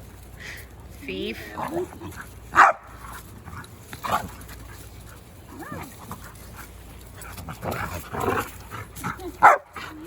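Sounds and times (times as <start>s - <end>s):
dog barking: 2.6s - 2.9s, 9.4s - 9.7s.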